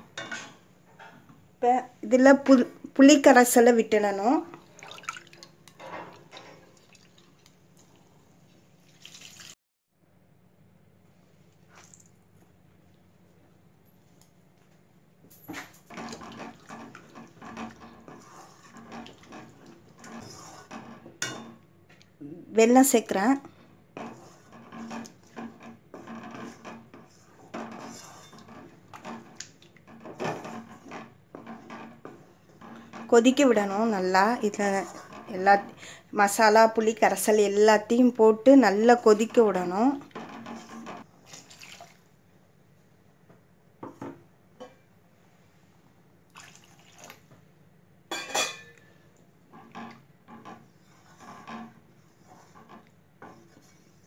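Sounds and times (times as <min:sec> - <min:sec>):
spoon scraping in cooking pot: 0:15.6 - 0:21.6, 0:24.0 - 0:35.8, 0:39.0 - 0:41.1, 0:49.5 - 0:54.0.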